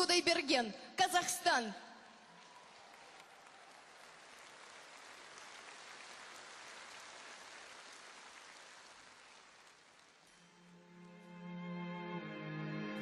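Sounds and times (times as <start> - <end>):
faint audience applause: 2.0 - 10.6.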